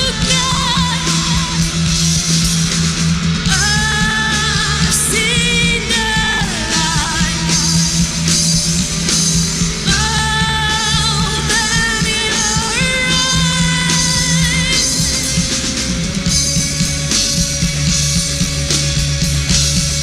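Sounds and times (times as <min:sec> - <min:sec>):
live rock band playing: 0:00.0 - 0:20.0.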